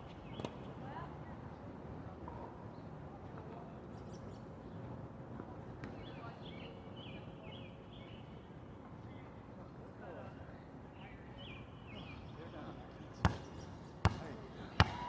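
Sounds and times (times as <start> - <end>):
outdoor background noise: 0.0 - 15.0
small birds chirping: 11.0 - 14.2.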